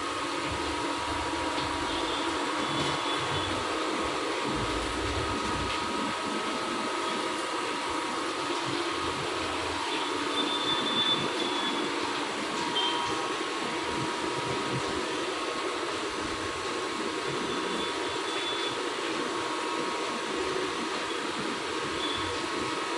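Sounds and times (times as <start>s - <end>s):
machine humming and whining: 0.0s - 22.9s
high machine squeals: 9.9s - 12.0s.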